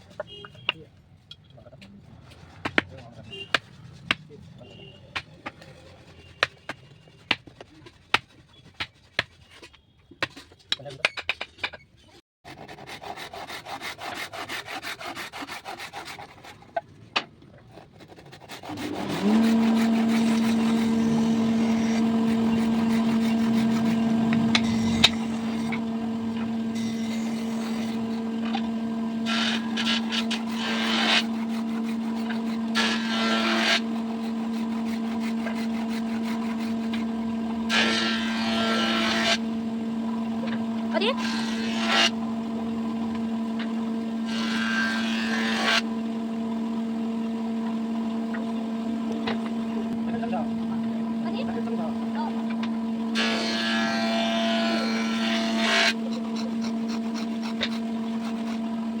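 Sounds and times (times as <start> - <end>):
power tool cutting wood: 18.4 - 59.0.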